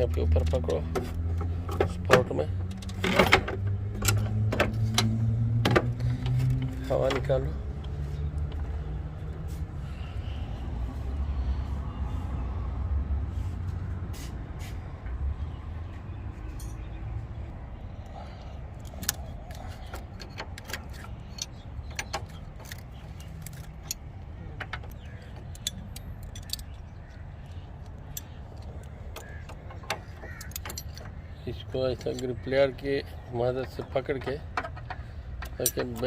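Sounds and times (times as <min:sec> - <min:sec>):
metal tool clicks and clinks: 0:25.5 - 0:26.9, 0:34.6 - 0:36.0.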